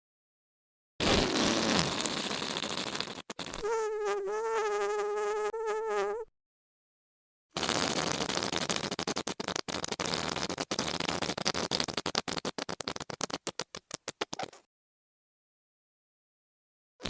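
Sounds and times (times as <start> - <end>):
whoopee cushion sounds: 1.0 - 6.3, 7.6 - 14.7.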